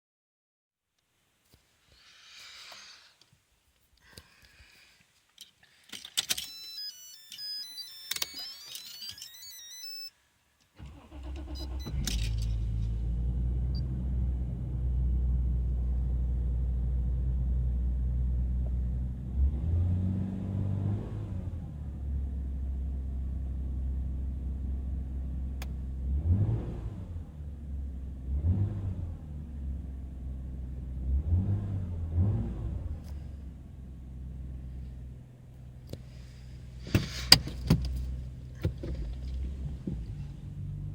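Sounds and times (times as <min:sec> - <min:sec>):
electronic beeping: 0:06.3 - 0:10.1
car engine starting and idling: 0:10.8 - 0:40.9.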